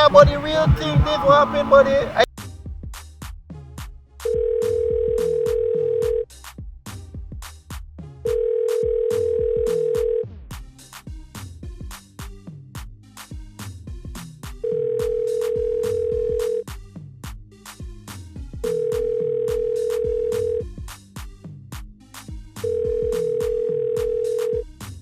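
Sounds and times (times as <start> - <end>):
electronic dance beat: 0.0 - 2.3, 22.9 - 24.4
loud steady beep tone: 0.0 - 2.3.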